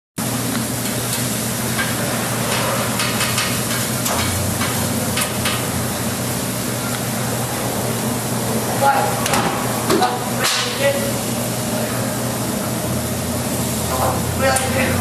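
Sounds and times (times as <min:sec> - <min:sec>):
food sizzling on griddle: 0:00.2 - 0:06.9, 0:09.9 - 0:15.0.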